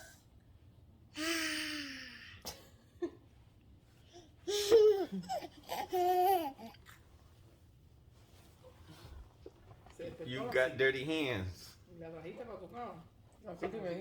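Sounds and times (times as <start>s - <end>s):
toddler babbling and laughing: 4.5s - 6.8s.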